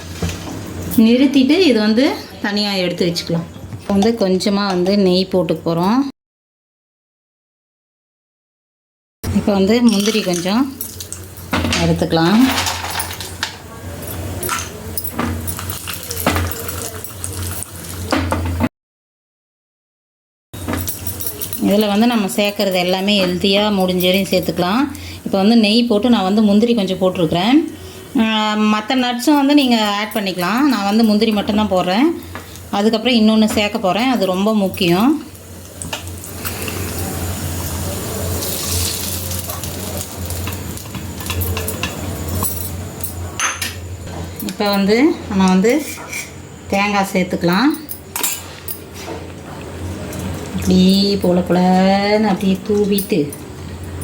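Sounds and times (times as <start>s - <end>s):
cashews and spoon clinking in pan: 9.8s - 18.1s, 20.6s - 24.7s, 33.4s - 43.8s.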